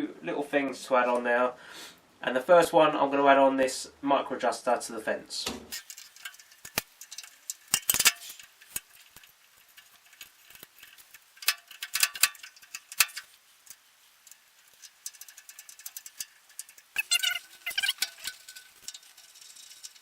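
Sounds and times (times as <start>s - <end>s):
small metal parts and tools clinking: 5.7s - 20.0s.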